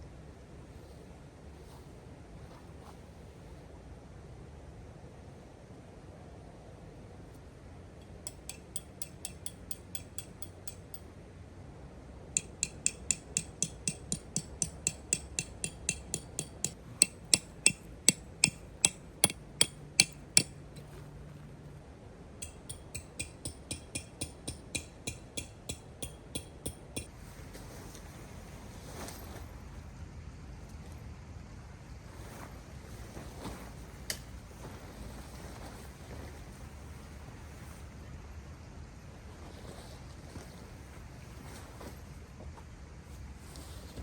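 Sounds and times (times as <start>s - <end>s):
hammer ringing on metal: 8.3s - 11.0s, 12.4s - 20.6s, 22.4s - 27.1s.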